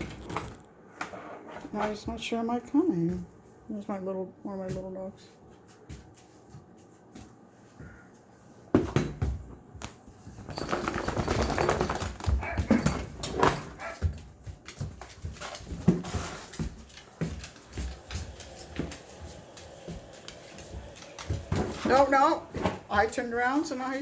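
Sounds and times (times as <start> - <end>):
dog scuffling and clatter: 10.2 - 23.9.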